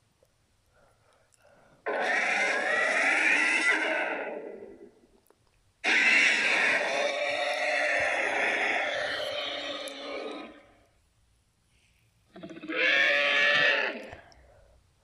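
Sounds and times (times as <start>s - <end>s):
harsh creature cries: 1.8s - 5.0s, 5.8s - 10.7s, 12.4s - 14.2s.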